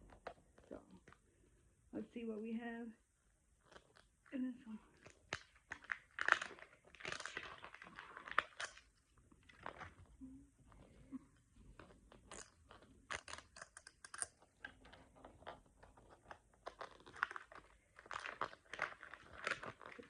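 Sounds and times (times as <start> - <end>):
plastic packaging crinkling: 4.9 - 10.1, 11.8 - 20.0.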